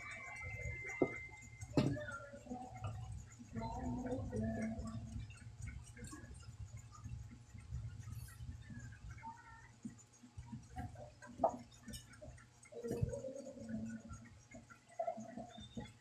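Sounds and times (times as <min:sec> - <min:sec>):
low voices: 0:00.0 - 0:05.2.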